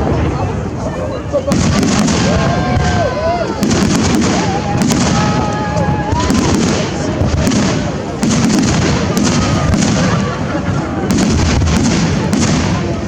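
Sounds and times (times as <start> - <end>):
crowd voices: 0.0 - 13.0
fireworks bangs and crackles: 0.0 - 13.0.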